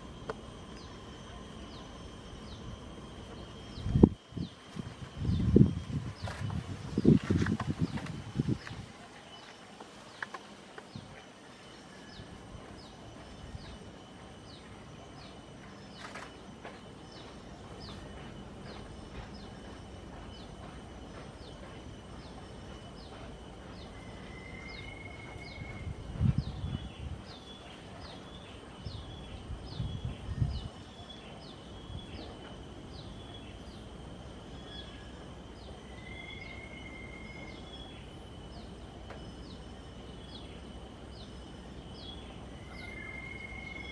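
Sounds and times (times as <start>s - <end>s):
high insect-like drone: 0.0s - 43.9s
long whistled notes: 42.4s - 43.9s.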